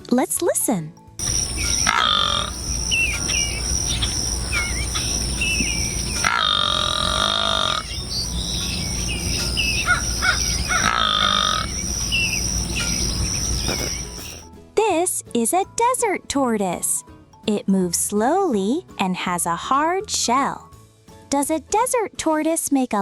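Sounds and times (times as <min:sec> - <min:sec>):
long even animal calls: 0:01.2 - 0:14.4
birds chirping: 0:01.2 - 0:14.5
high insect drone: 0:01.2 - 0:14.5.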